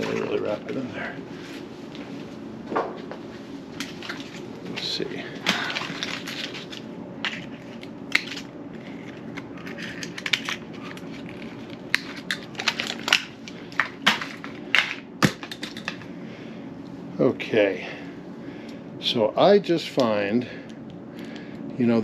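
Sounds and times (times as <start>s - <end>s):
packaging crinkling and rustling: 3.8s - 16.0s.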